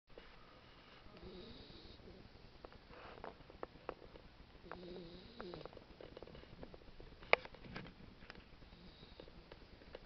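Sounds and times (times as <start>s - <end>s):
pet snoring faintly: 0.9s - 2.3s, 4.6s - 5.8s, 8.7s - 9.6s.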